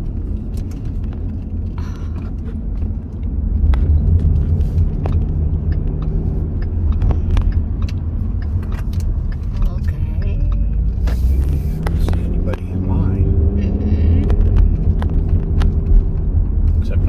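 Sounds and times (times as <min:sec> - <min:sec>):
car interior engine rumble: 0:00.0 - 0:17.0.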